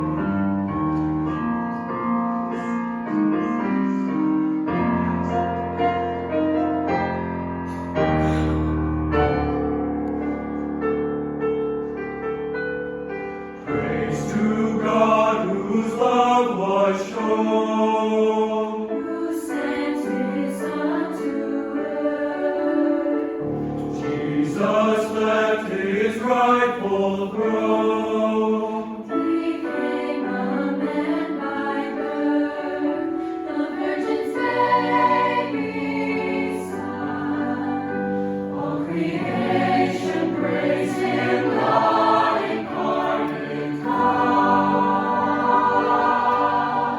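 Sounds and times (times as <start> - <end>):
choir singing a hymn: 0.0 - 46.9
piano chord: 5.0 - 15.4.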